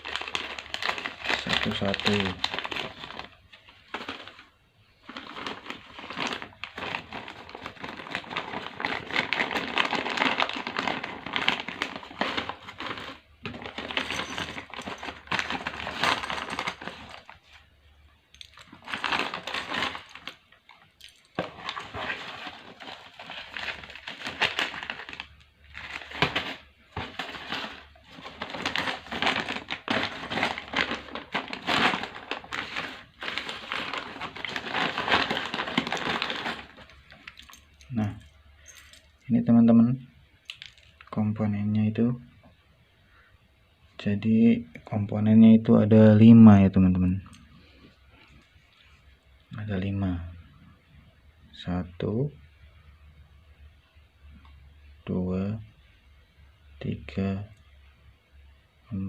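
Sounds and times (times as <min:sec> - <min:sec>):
plastic packaging crinkling: 0:00.0 - 0:17.7, 0:18.3 - 0:39.2, 0:40.5 - 0:41.2.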